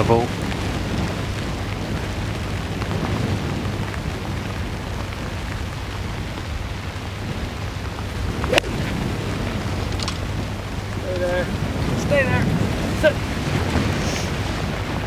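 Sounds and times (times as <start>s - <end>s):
wind buffeting microphone: 0.0s - 15.0s
golf club striking ball: 8.4s - 9.0s.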